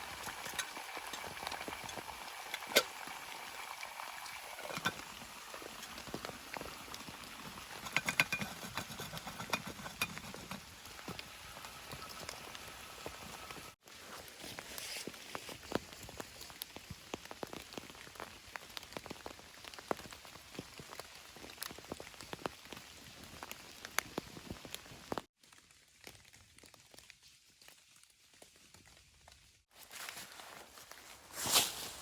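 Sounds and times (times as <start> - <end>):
rain pattering on a tarp: 0.0 - 7.9, 10.6 - 32.0.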